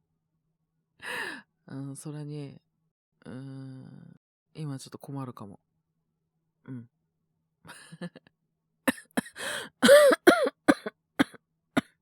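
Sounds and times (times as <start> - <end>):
man coughing: 8.9 - 11.4
faint breath: 9.3 - 9.8.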